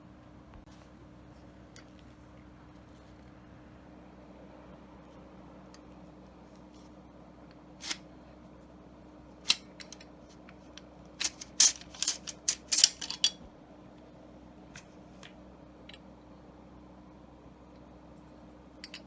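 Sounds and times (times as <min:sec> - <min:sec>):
metal gun parts clicking: 0:09.5 - 0:10.1, 0:11.2 - 0:13.4
metal parts rattling: 0:11.2 - 0:13.4.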